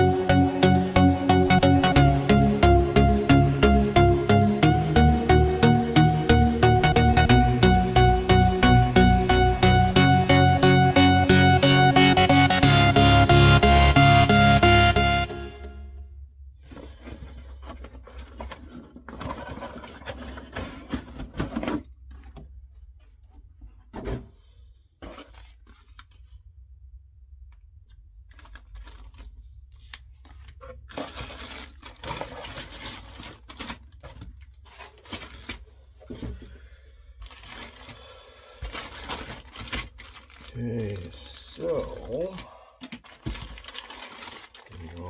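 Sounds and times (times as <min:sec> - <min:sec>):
plastic packaging rustling: 0:16.7 - 0:22.3, 0:25.0 - 0:26.4, 0:28.3 - 0:36.4, 0:37.2 - 0:45.0.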